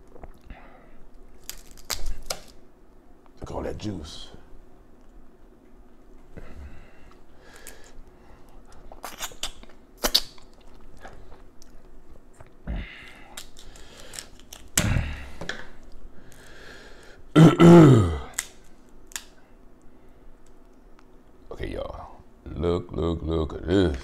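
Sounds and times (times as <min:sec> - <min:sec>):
crab shell cracking: 0:01.2 - 0:02.6, 0:07.4 - 0:15.0, 0:18.2 - 0:19.5
chewing and wet smacking: 0:08.4 - 0:12.6.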